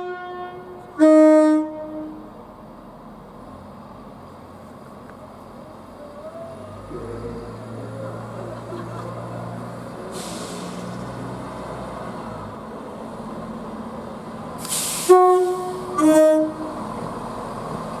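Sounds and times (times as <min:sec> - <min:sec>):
train horn blasts: 0:00.0 - 0:02.3, 0:15.0 - 0:16.8
train rumbling: 0:00.0 - 0:18.0
air hiss: 0:10.1 - 0:11.1, 0:14.6 - 0:15.7.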